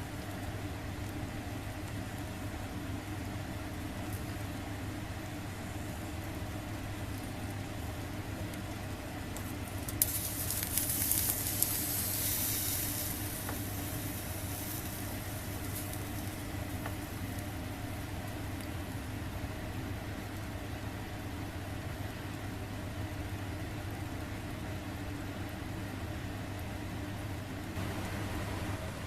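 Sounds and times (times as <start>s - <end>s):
steady low hum: 0.0s - 20.8s, 27.4s - 29.0s
food sizzling on a grill: 8.0s - 19.0s
hiss: 9.9s - 17.2s.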